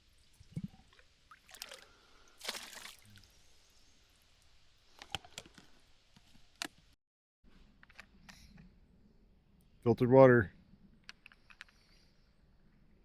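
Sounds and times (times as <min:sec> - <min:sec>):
water pouring into bottle: 0:00.4 - 0:03.1.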